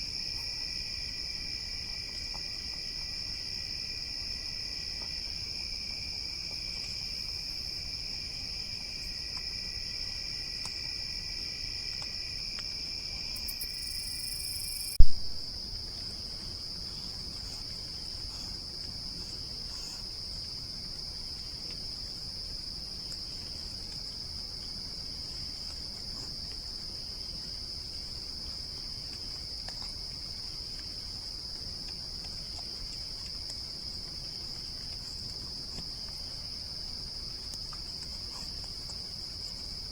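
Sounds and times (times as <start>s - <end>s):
low insect trill: 0.0s - 20.1s
high insect trill: 0.0s - 20.4s.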